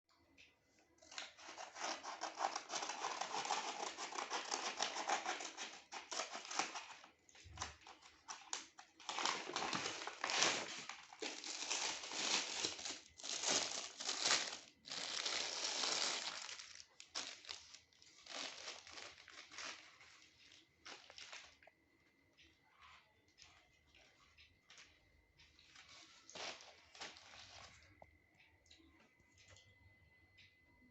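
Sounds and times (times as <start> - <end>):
packaging crinkling: 1.1 - 21.7, 25.7 - 27.9.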